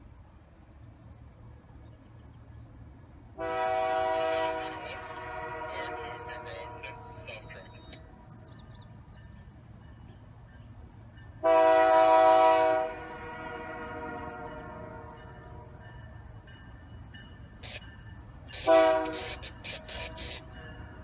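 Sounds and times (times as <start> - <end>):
passing train rumble: 0.0 - 21.0
train horn blast: 3.4 - 7.2, 11.4 - 15.9, 18.6 - 19.4.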